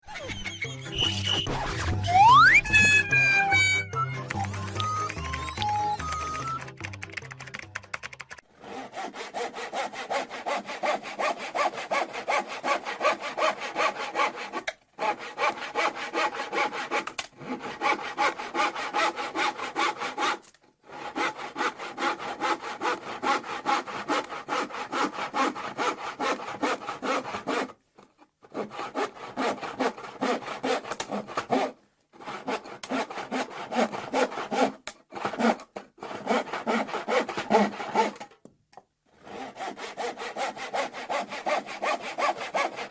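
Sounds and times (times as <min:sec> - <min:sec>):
hand saw cutting wood: 0:08.5 - 0:38.4, 0:39.1 - 0:42.9.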